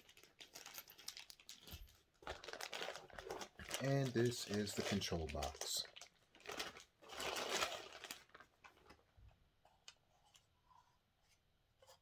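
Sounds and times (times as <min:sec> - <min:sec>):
plastic packaging crinkling: 0:00.0 - 0:09.1.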